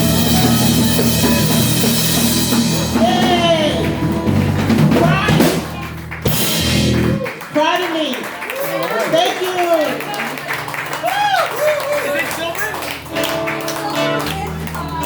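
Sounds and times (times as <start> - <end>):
person singing: 0.0 - 5.8
band music with drums and bass: 0.0 - 7.5, 11.0 - 15.0.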